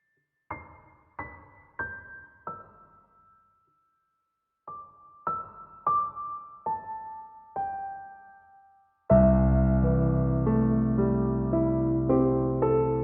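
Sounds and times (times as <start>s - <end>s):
slow soft piano notes: 4.7s - 13.0s.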